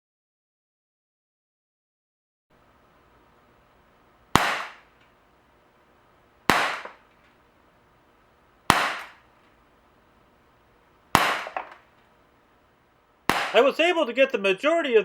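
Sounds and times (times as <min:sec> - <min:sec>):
air pistol shots: 0:04.3 - 0:04.9, 0:06.5 - 0:07.0, 0:08.7 - 0:09.2, 0:11.1 - 0:11.9, 0:13.3 - 0:13.7.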